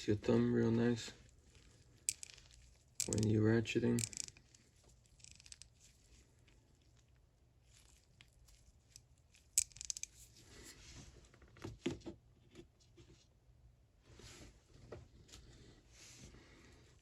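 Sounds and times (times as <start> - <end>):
rustling: 1.1 - 11.4
ratchet clicking: 2.1 - 3.3, 3.9 - 4.6, 5.2 - 5.7, 9.6 - 10.1.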